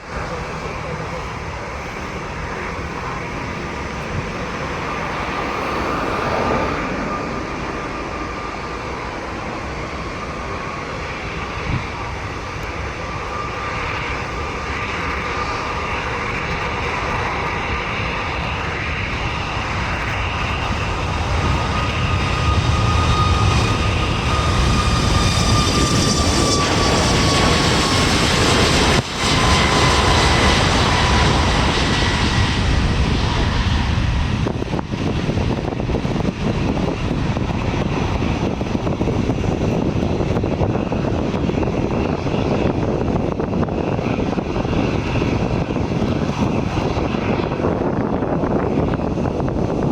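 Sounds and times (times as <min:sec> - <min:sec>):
jet engine roar with fan whine: 0:00.0 - 0:49.9.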